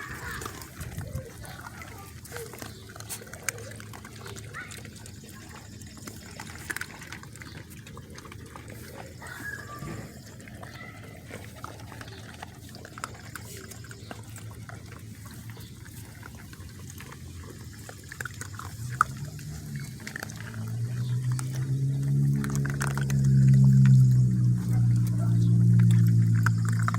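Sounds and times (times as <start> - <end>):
puppies squeaking and grunting: 0.0 - 26.9
wet mouth clicks: 16.2 - 26.9.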